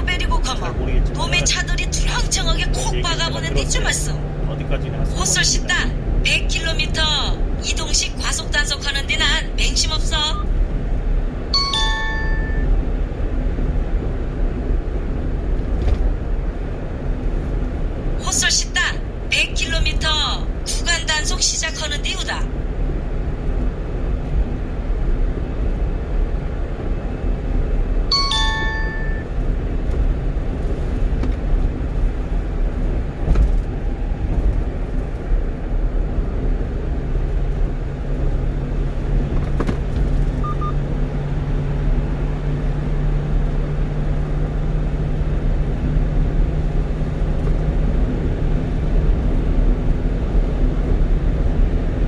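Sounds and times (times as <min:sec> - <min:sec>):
low steady hum: 0:00.0 - 0:46.8
truck engine and tyre noise: 0:00.0 - 0:52.0
short electronic chime: 0:11.6 - 0:12.7, 0:28.1 - 0:29.2.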